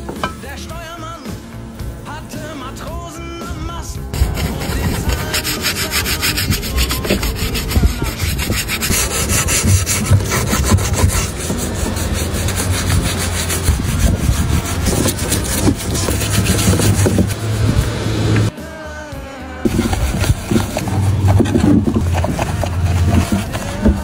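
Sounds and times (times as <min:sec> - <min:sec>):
hand scraping strokes: 0:04.1 - 0:18.5, 0:19.6 - 0:24.0.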